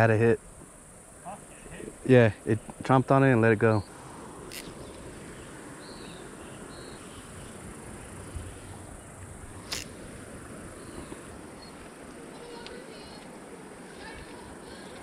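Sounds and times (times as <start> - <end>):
high insect drone: 0.0 - 15.0
steady hiss: 0.0 - 15.0
sharp click: 9.6 - 9.9.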